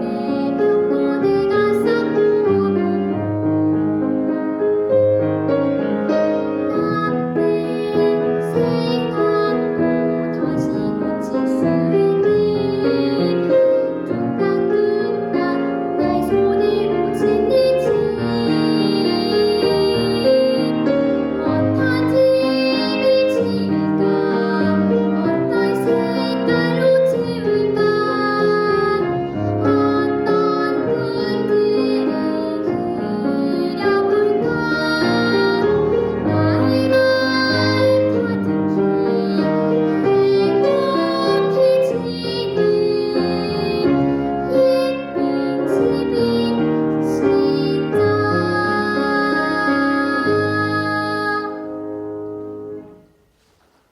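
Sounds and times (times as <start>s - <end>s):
child singing: 0.0s - 3.2s, 6.6s - 51.8s
piano accompaniment: 0.0s - 53.9s.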